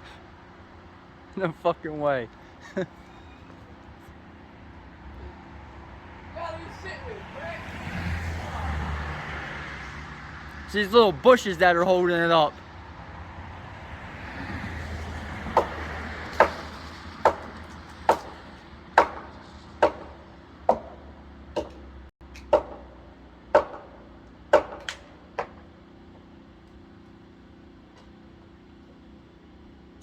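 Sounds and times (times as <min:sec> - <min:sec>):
chopping into wood: 0:15.5 - 0:21.0, 0:21.6 - 0:22.8, 0:23.6 - 0:25.6.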